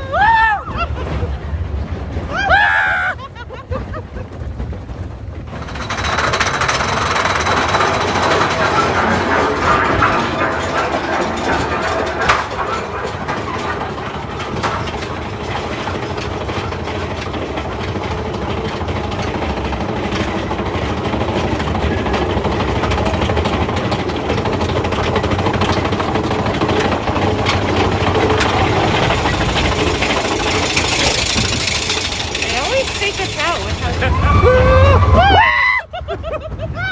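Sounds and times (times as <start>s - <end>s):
roller coaster rumbling on track: 0.0s - 36.9s
sharp clack: 5.5s - 34.1s.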